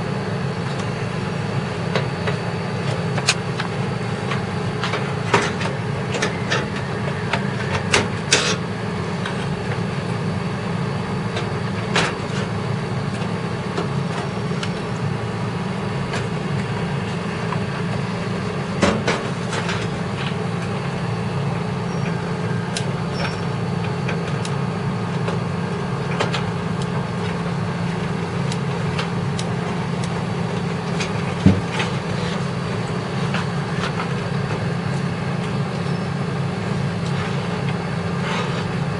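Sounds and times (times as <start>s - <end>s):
low mechanical hum: 0.0s - 38.9s.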